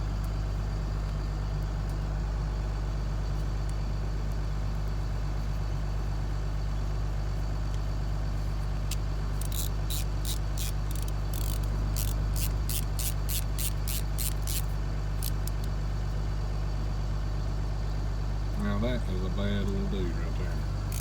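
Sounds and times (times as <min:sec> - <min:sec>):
vehicle engine idling: 0:00.0 - 0:21.0
short raspy bursts: 0:09.4 - 0:15.7, 0:20.4 - 0:21.0.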